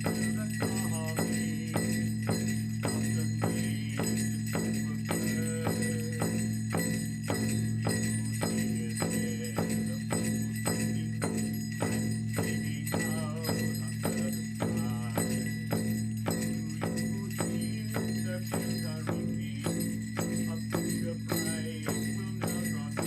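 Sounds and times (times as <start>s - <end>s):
jingling shimmer: 0.0s - 23.0s
steady drumbeat: 0.0s - 23.0s.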